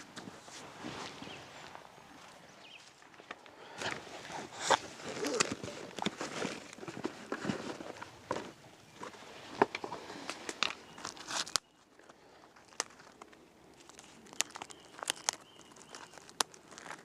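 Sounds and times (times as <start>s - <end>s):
dry twigs crunching and snapping: 4.6s - 7.4s, 9.7s - 17.0s.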